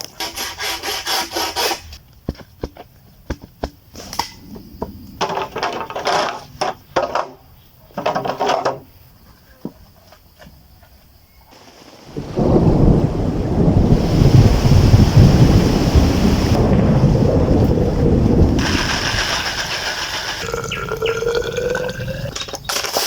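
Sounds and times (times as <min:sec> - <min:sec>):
hand saw cutting wood: 0:00.0 - 0:02.0, 0:18.6 - 0:20.5.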